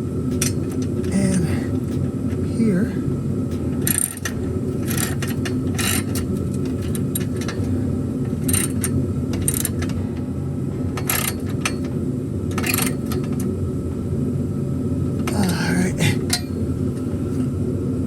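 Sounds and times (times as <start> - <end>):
steady low hum: 0.0 - 18.0
wrench clicking and scraping: 3.5 - 7.7, 8.3 - 10.0.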